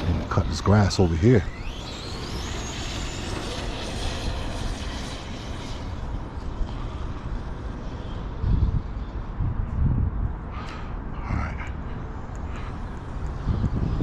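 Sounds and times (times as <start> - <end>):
electric motor high whine: 0.0 - 9.5.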